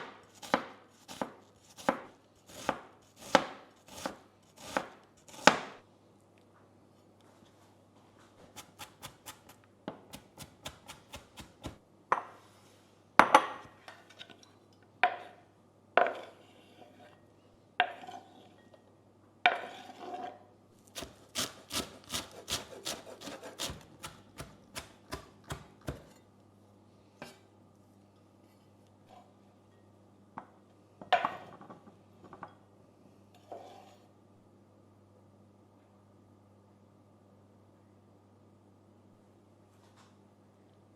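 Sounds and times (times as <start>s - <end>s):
knife chopping on wooden board: 0.0s - 5.8s, 8.5s - 11.8s, 20.9s - 26.2s.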